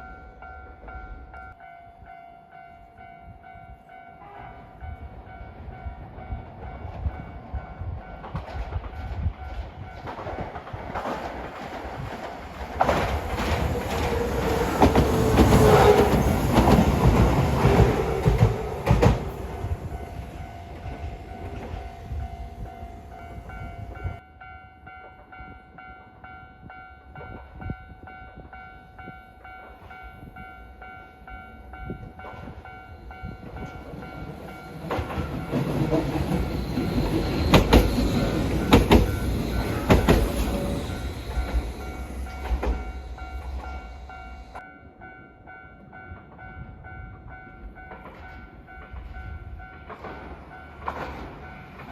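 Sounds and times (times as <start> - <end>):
train wheels clattering over rail joints: 8.2 - 19.8, 33.4 - 44.5, 47.9 - 51.9.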